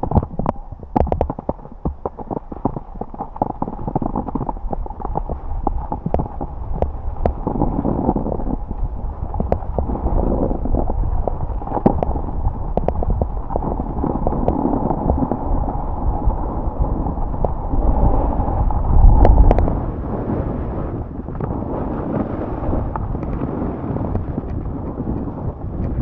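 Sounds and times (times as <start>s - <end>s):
wind buffeting microphone: 0.0s - 26.0s
snowboard scraping snow: 13.6s - 25.8s.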